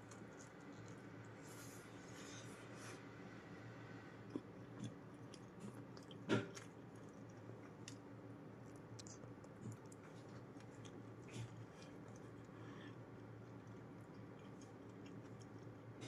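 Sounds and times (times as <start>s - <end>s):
chewing: 0.0s - 1.5s, 4.3s - 16.0s
faint low hum: 0.0s - 16.0s.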